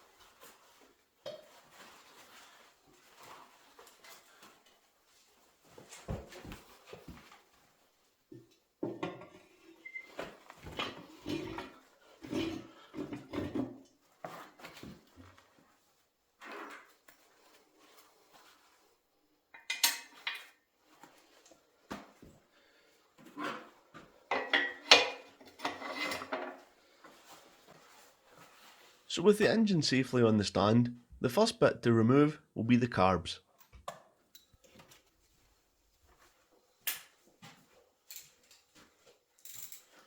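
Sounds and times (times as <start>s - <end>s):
metal tools clinking and clanking: 39.4s - 40.0s.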